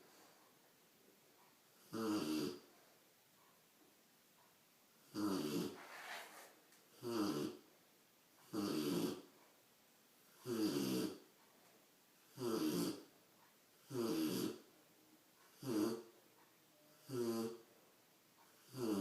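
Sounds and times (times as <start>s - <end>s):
puppy snoring: 1.7s - 2.8s, 5.0s - 7.7s, 8.4s - 9.4s, 10.3s - 11.3s, 12.3s - 13.1s, 13.8s - 14.7s, 15.5s - 16.2s, 16.8s - 17.8s, 18.5s - 19.0s.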